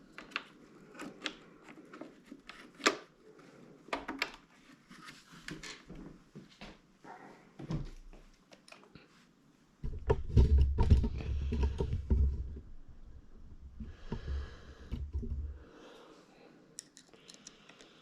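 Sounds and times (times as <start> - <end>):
plastic parts clicking and knocking: 0.0 - 3.1, 3.9 - 4.5, 9.8 - 15.6, 16.8 - 18.0.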